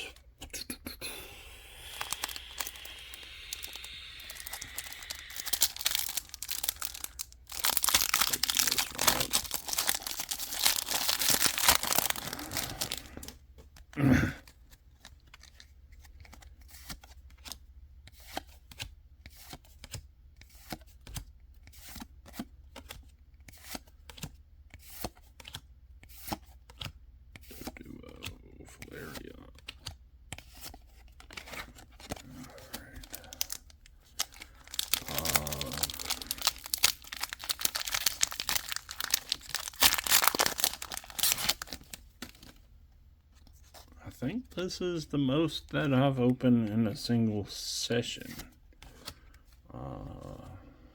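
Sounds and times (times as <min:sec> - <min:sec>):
foil pack crinkling and tearing: 0:01.6 - 0:13.3, 0:32.5 - 0:42.6.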